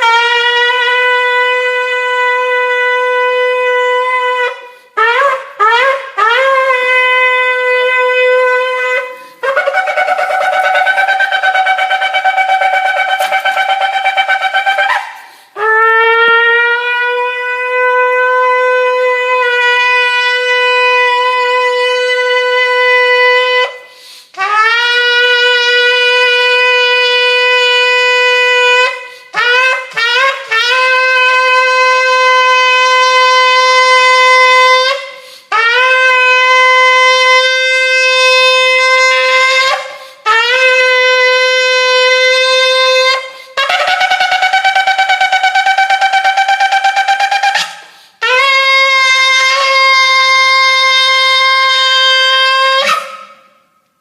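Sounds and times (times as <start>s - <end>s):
shofar blasts: 0.0s - 53.8s.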